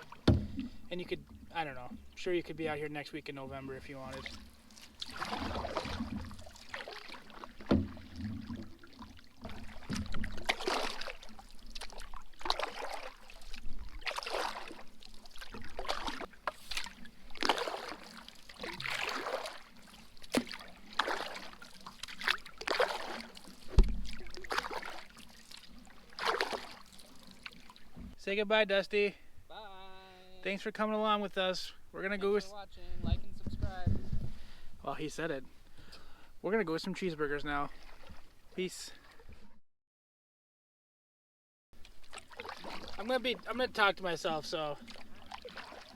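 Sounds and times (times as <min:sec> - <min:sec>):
paddle strokes in water: 0:00.0 - 0:02.5, 0:03.4 - 0:28.2, 0:36.8 - 0:39.6, 0:41.8 - 0:45.9.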